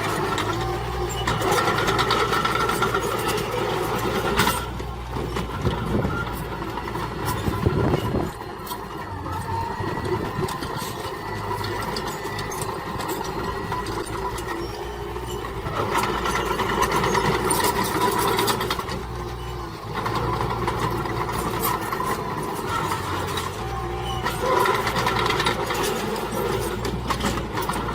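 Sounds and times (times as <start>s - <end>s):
heavy machinery diesel engines: 0.0s - 27.9s
clanks and rattles: 10.0s - 27.9s.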